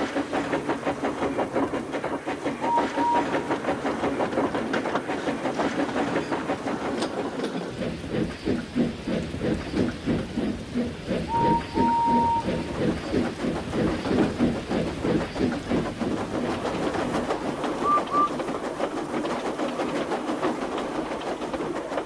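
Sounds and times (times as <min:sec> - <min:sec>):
rail clatter: 0:00.0 - 0:22.0
steam locomotive chuffing: 0:00.0 - 0:22.0
steam whistle toots: 0:02.6 - 0:03.5, 0:11.3 - 0:12.8, 0:17.8 - 0:18.4.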